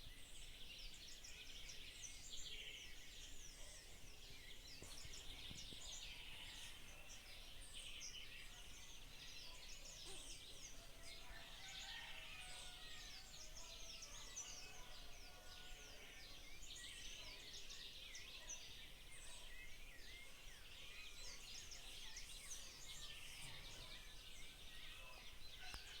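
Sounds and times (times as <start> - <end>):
chorus of birds chirping: 0.0 - 26.0.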